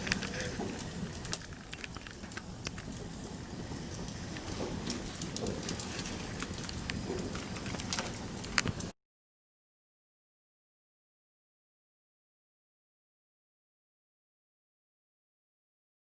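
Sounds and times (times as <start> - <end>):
burning wood popping: 0.0 - 8.9
campfire crackling: 0.0 - 8.9.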